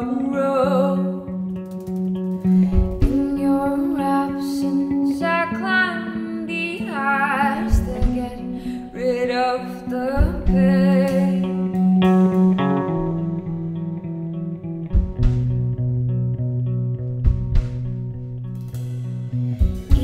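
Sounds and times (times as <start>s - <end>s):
woman singing wavering notes: 0.0s - 1.5s, 3.0s - 12.6s
plucked guitar: 0.0s - 20.0s.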